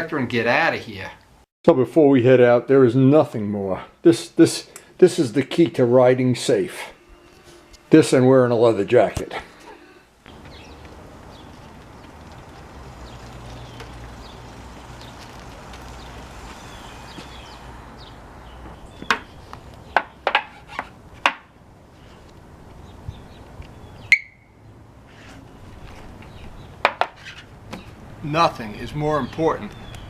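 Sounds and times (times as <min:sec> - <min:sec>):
brief ringing tone: 0:06.9 - 0:07.9.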